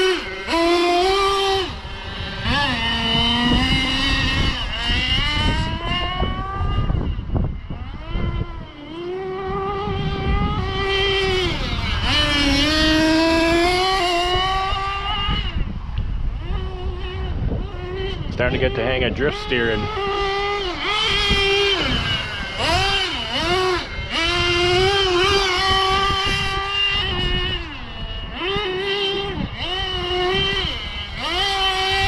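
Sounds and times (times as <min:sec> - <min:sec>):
rc car engine revving: 0:00.0 - 0:32.0.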